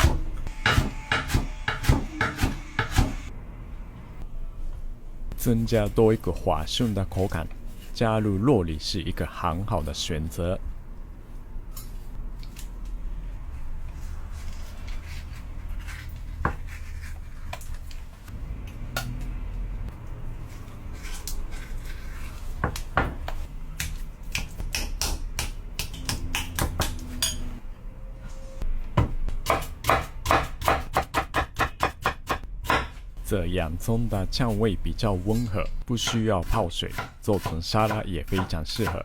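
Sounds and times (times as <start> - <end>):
knife chopping on cutting board: 0.0 - 3.2, 22.6 - 27.2, 29.0 - 33.0, 36.9 - 39.0.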